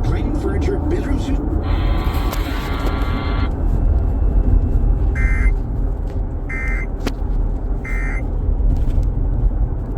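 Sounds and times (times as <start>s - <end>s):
car interior road rumble: 0.0s - 9.9s
short electronic beeps: 1.7s - 3.5s, 5.2s - 5.6s, 6.5s - 6.9s, 7.8s - 8.2s.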